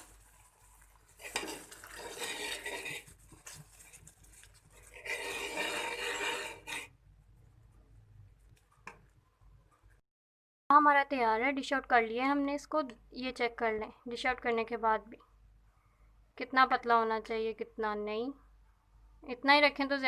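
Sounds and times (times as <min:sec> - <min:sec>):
utensil scraping a pan: 0:00.0 - 0:07.0.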